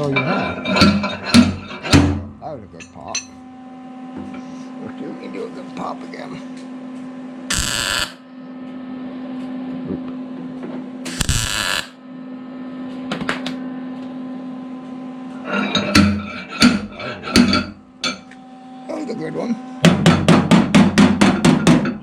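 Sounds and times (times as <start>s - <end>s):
steady electrical hum: 0.0s - 22.0s
harsh buzzing bursts: 7.5s - 8.2s, 11.1s - 12.0s.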